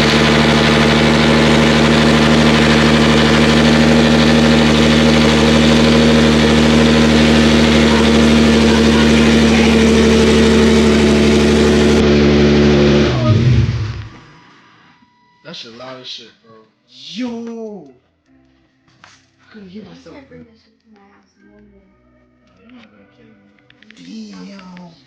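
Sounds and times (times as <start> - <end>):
car engine idling loudly: 0.0 - 14.3.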